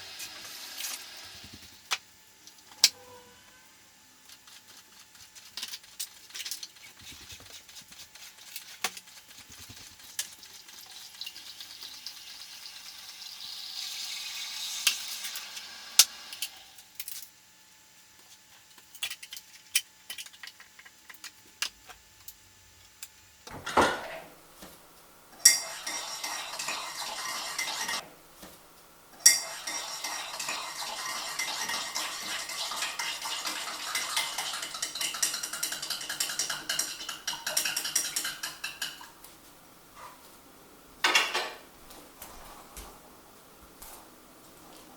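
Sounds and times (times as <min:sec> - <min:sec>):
dishes and cutlery clattering: 0:23.5 - 0:24.3, 0:25.4 - 0:28.1, 0:29.2 - 0:39.2, 0:41.0 - 0:41.7.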